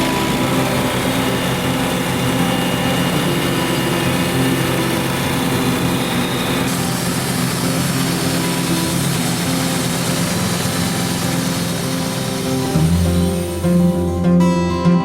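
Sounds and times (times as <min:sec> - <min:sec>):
sawmill engine running: 0:00.0 - 0:14.5.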